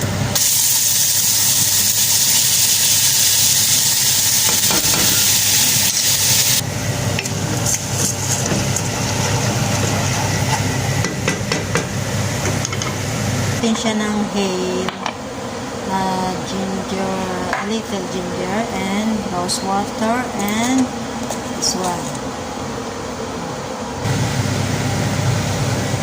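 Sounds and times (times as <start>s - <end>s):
pan sizzling: 0.0s - 13.9s
spoon stirring and scraping pan: 7.2s - 10.9s.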